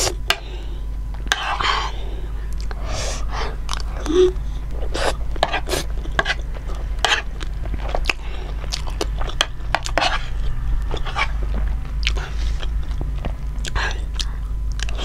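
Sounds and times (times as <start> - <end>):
steady low hum: 0.0 - 15.0
wet chewing mouth clicks: 12.0 - 15.0.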